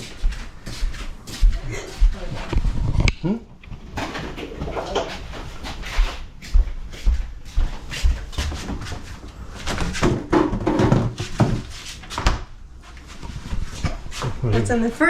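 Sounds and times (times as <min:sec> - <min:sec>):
refrigerator doors knocking: 0:10.0 - 0:11.6.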